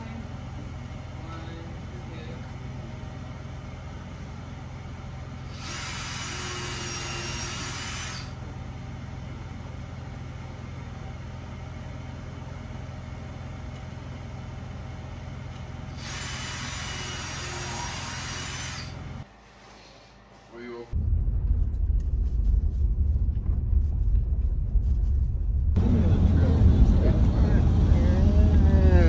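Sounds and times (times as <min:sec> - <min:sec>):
power drill whining: 0:05.5 - 0:08.4, 0:15.9 - 0:19.2
low hum: 0:20.8 - 0:29.0.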